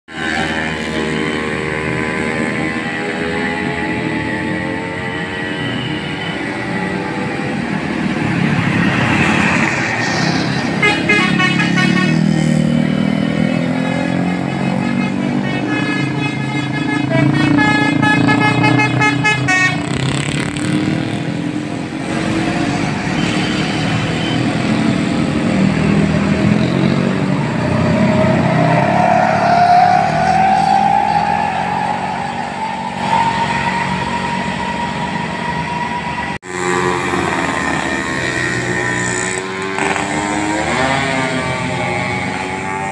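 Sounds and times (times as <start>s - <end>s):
musical horn tooting melody: 10.7s - 12.6s, 13.8s - 19.8s
long rising horn tone: 26.4s - 42.9s.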